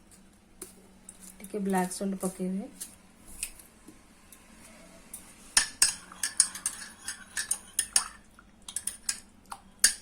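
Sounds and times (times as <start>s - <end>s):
spoon clinking in a cup: 5.6s - 9.2s.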